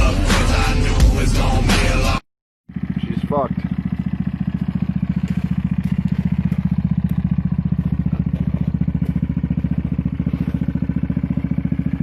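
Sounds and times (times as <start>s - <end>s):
vehicle engine running steadily: 2.7s - 12.0s.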